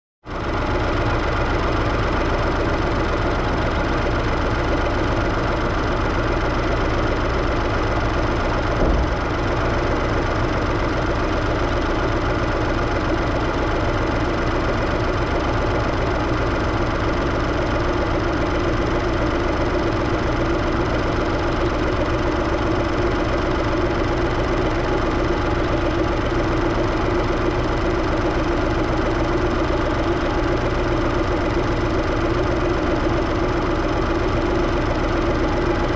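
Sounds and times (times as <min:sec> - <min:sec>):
car engine idling: 0:00.3 - 0:35.9
low thump: 0:08.7 - 0:09.6.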